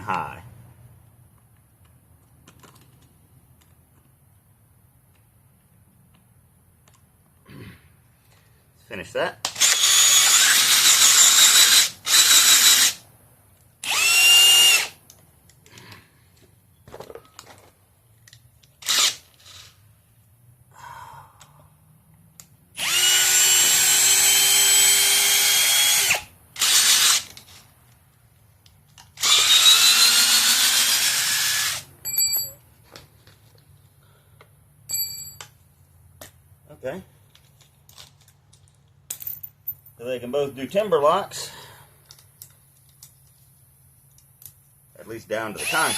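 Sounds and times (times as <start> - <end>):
drill driving screws into wood: 9.4 - 13.0, 13.8 - 15.0, 18.8 - 19.8, 22.8 - 27.6, 29.0 - 31.9, 45.4 - 45.9.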